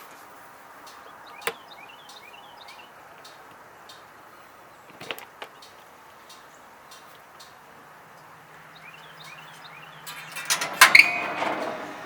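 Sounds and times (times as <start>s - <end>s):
bird chirps: 0.8s - 7.6s, 8.6s - 11.3s.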